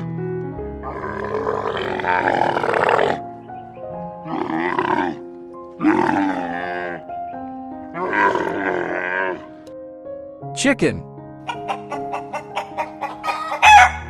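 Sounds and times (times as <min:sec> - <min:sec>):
background music with held tones: 0:00.0 - 0:14.0
camel calling: 0:00.8 - 0:09.6.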